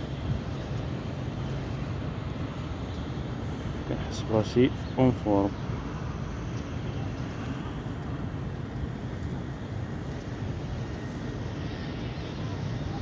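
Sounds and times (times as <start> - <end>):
wind buffeting microphone: 0.0 - 3.8.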